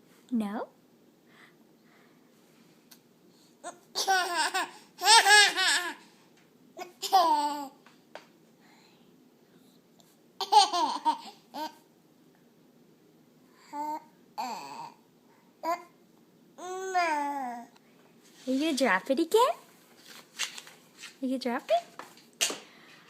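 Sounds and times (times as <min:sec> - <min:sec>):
baby laughing: 0:03.6 - 0:06.0, 0:06.8 - 0:07.8, 0:10.4 - 0:11.8.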